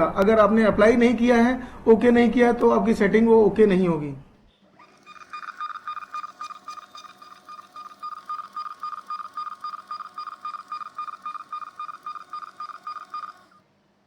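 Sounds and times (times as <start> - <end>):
label printer pulsing whine: 4.6 - 13.6.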